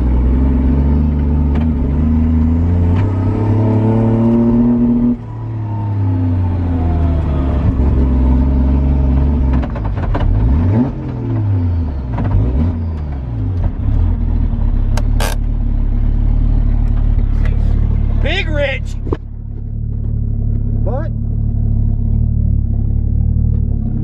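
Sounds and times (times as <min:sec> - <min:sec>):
car engine revving: 0:00.0 - 0:24.0
sharp click: 0:15.0 - 0:15.4.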